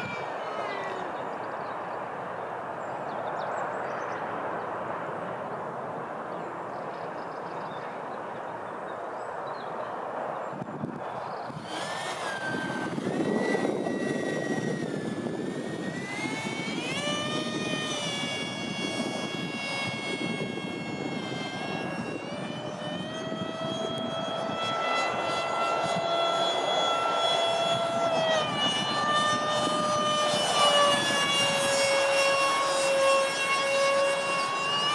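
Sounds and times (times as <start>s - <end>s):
electric ducted fan whining: 0.0s - 2.0s, 10.5s - 34.9s.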